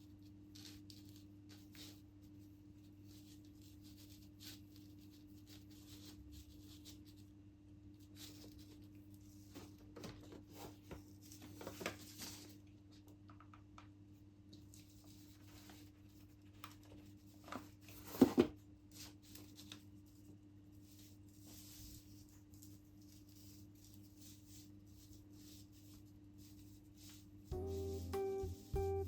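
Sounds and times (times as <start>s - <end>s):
hands rustling and tapping: 21.3s - 29.0s.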